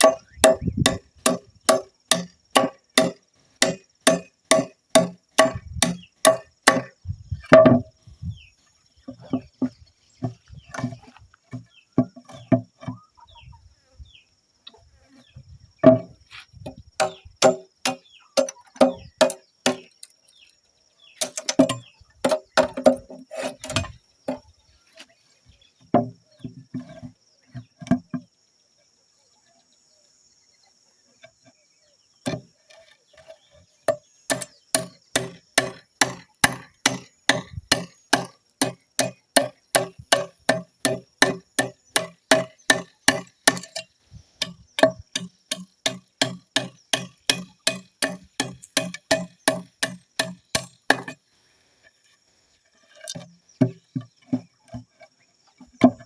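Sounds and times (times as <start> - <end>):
hand tool striking wood: 0.0 - 7.9, 9.1 - 13.0, 15.8 - 20.1, 21.2 - 24.4, 32.3 - 32.5, 33.9 - 51.2, 55.6 - 56.0.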